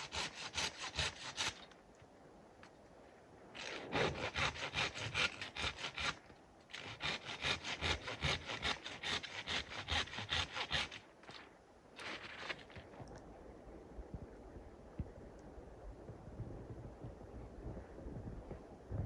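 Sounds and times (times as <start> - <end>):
hand saw cutting wood: 0.0 - 1.7, 3.6 - 11.4, 12.0 - 12.8.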